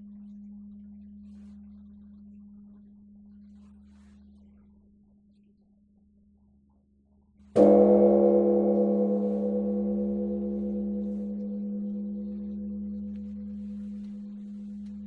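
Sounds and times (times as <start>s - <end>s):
temple gong ringing: 7.6s - 14.8s.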